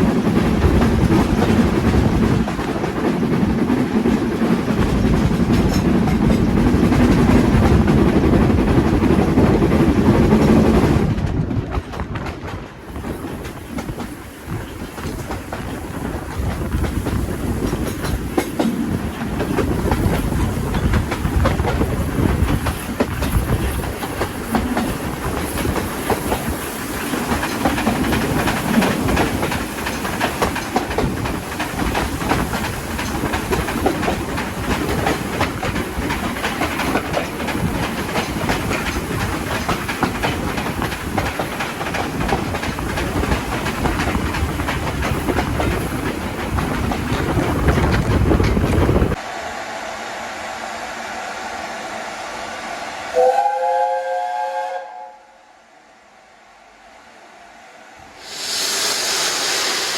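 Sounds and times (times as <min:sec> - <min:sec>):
steam train wheels clattering: 0:00.0 - 0:54.7, 0:58.1 - 0:59.9
steam locomotive whistle: 0:49.6 - 0:55.9
steam hiss: 0:57.0 - 0:59.9.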